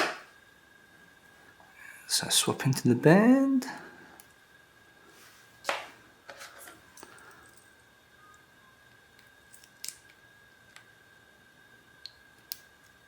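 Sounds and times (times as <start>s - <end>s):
faint steady high tone: 6.8s - 9.6s.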